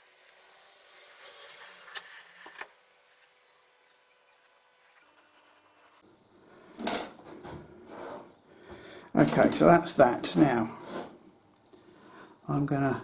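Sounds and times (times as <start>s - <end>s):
loud scraping rub: 7.3s - 8.4s, 10.7s - 11.2s.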